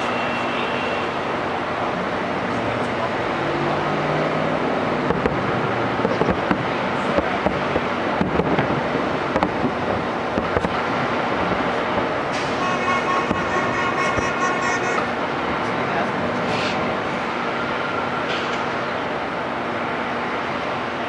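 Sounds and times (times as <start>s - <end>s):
rushing background noise: 0.0s - 21.0s
fireworks popping and crackling: 5.1s - 12.3s.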